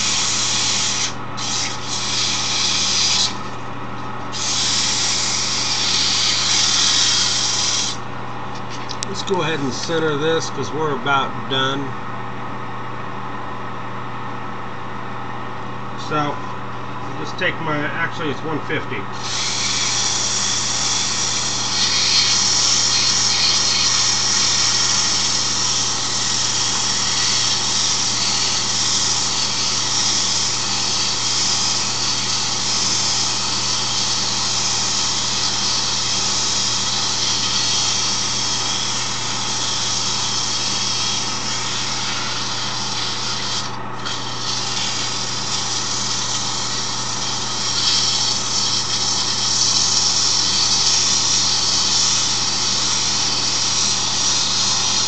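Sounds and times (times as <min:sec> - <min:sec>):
sandpaper hissing on spinning wood: 0:00.0 - 0:03.5, 0:04.3 - 0:08.0, 0:19.2 - 0:55.0
wood lathe motor hum: 0:00.0 - 0:03.5, 0:04.3 - 0:08.0, 0:19.2 - 0:55.0.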